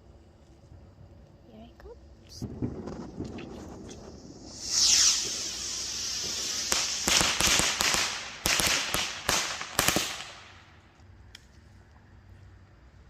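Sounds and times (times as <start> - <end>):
firework hissing: 2.4 - 10.8
firework cracks and pops: 2.4 - 11.6.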